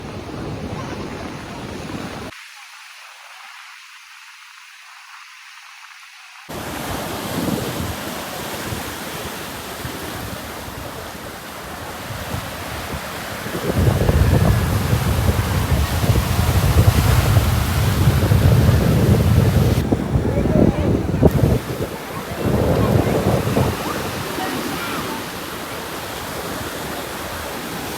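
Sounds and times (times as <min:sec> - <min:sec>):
wind buffeting microphone: 0:00.0 - 0:02.3, 0:06.5 - 0:27.9
ocean surf on beach: 0:00.0 - 0:27.9.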